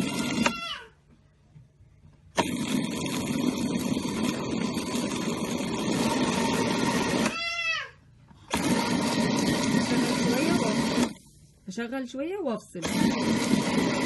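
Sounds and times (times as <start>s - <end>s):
blender motor whining: 0.0s - 0.9s, 2.4s - 7.6s, 8.5s - 11.3s, 12.8s - 14.0s.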